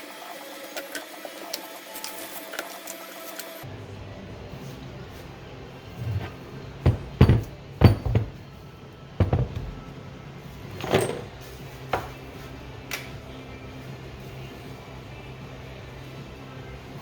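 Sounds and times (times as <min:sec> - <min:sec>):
quiet background music: 0:00.0 - 0:17.0
metal parts knocking and clattering: 0:06.0 - 0:08.6, 0:09.2 - 0:09.9, 0:10.7 - 0:11.4.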